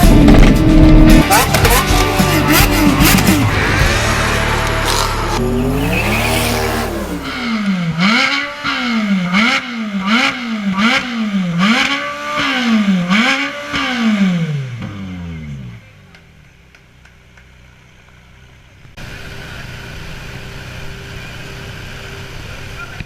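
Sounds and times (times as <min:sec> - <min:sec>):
loud low engine rumble: 0:00.0 - 0:08.7, 0:14.6 - 0:23.0
car engine revving: 0:00.0 - 0:16.3.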